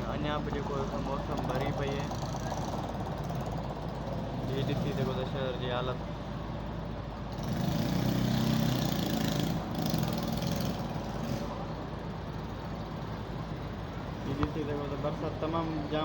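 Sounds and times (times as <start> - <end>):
steady traffic hum: 0.0 - 16.0
vehicle engine passing close: 7.3 - 11.9.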